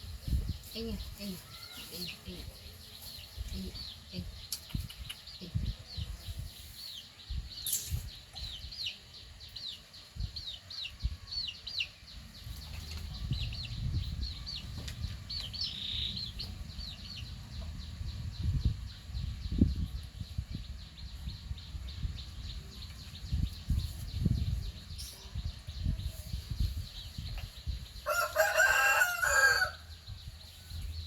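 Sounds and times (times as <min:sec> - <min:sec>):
small bird chirping: 0:00.2 - 0:28.6
low thumps and rumble: 0:12.8 - 0:24.7.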